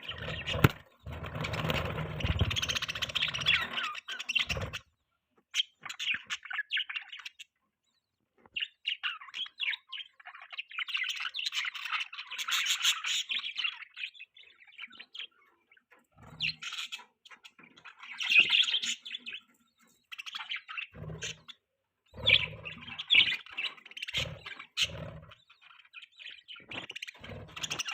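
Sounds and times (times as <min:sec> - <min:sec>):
budgerigars chirping: 0:00.0 - 0:05.0, 0:08.6 - 0:27.9.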